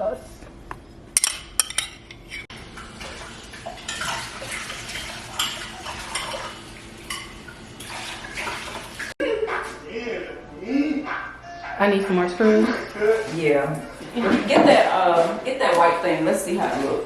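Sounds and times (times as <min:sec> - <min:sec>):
dishes scraping: 0:00.7 - 0:02.5, 0:03.1 - 0:08.7
utensils and dishes clattering: 0:01.2 - 0:09.8, 0:11.1 - 0:17.0.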